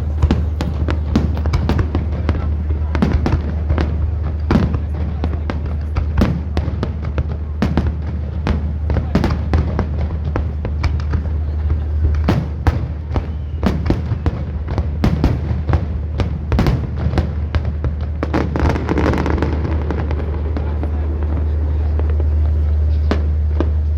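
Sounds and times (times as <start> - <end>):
fireworks bursting: 0.0 - 23.9
low hum: 17.7 - 23.9.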